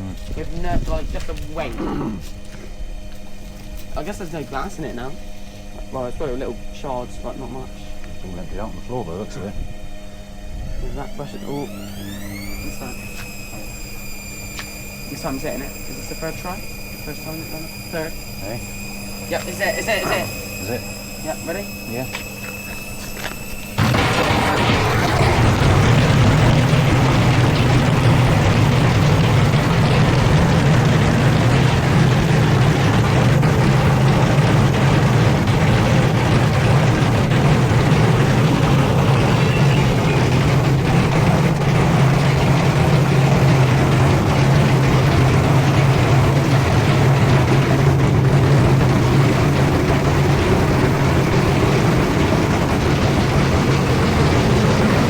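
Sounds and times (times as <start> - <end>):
washing machine spinning: 0.0 - 55.0
drum ticks: 23.8 - 55.0
rattling: 23.8 - 55.0.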